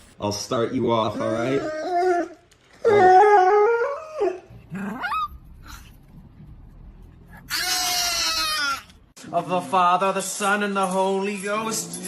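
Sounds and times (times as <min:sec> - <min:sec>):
dog howling: 0:01.1 - 0:05.3
dog whining: 0:01.1 - 0:05.9, 0:07.3 - 0:09.0.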